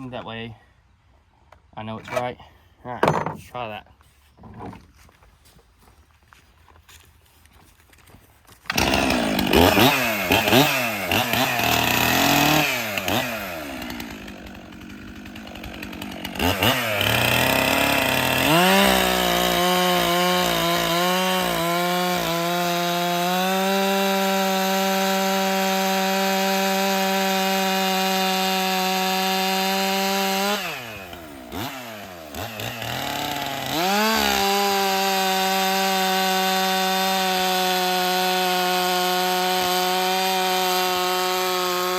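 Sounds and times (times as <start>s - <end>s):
chainsaw revving: 8.7s - 41.9s.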